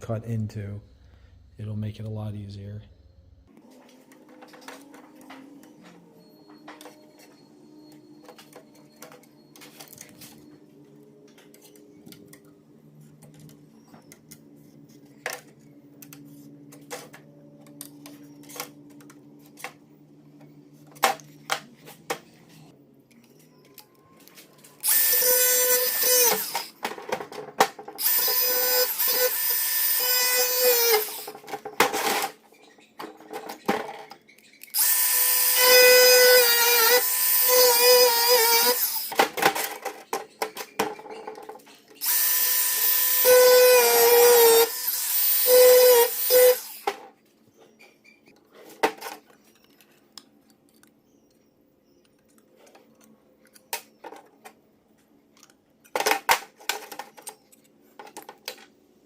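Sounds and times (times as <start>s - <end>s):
power saw cutting sheet steel: 24.8s - 26.7s, 28.0s - 31.4s, 34.8s - 39.2s, 42.0s - 46.9s.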